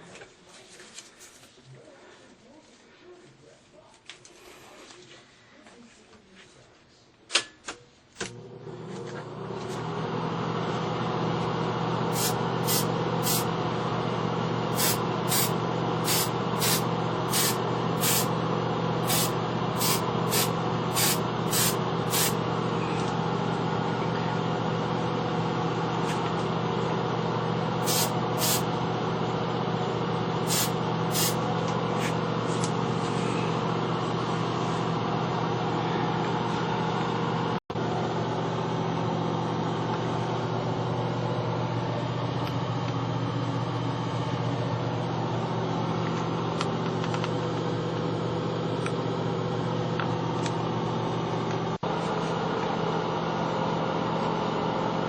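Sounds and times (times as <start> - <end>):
short high hissing strokes: 12.2 - 13.5, 14.8 - 15.5, 16.1 - 18.3, 19.1 - 22.4, 27.8 - 28.6, 30.5 - 31.4
motor humming: 19.0 - 24.9, 25.7 - 36.6.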